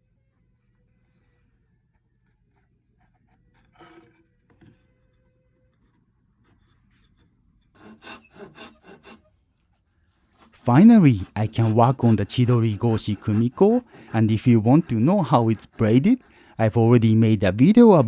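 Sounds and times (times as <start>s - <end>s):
hand tool scraping wood: 7.7s - 9.3s, 10.2s - 18.0s
rubbing strokes on wood: 10.2s - 18.0s.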